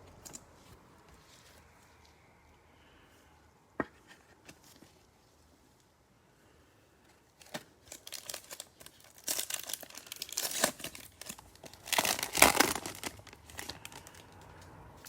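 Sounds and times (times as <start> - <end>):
foil wrapper tearing and crinkling: 7.4 - 14.2.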